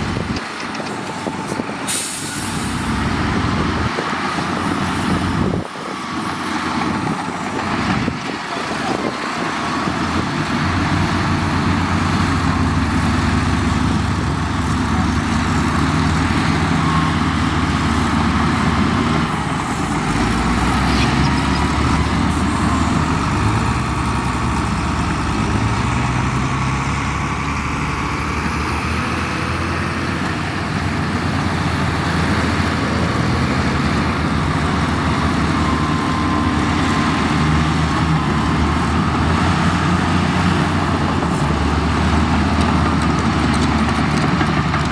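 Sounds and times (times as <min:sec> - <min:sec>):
heavy diesel engine running: 0:00.0 - 0:44.9.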